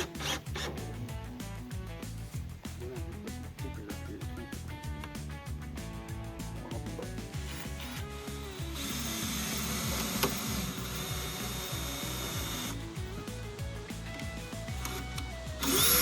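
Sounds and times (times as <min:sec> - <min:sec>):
background music: 0:00.0 - 0:16.0
power tool running: 0:07.9 - 0:16.0.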